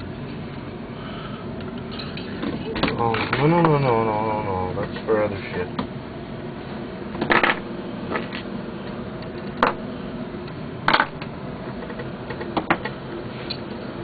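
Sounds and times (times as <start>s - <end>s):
steady low hum: 0.0s - 14.0s.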